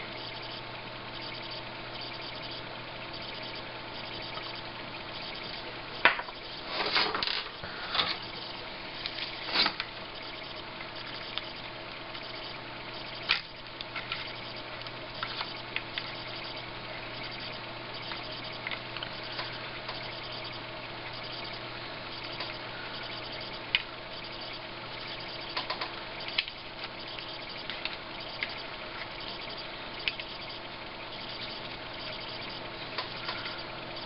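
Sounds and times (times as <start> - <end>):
low hum: 0.0 - 34.0
sharp clicks: 22.2 - 23.9, 25.0 - 30.5.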